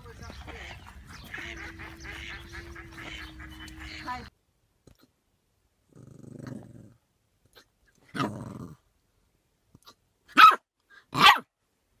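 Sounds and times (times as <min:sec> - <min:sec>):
loud sharp animal calls: 0:00.4 - 0:04.3
animal growling low: 0:05.9 - 0:07.0, 0:08.2 - 0:08.8.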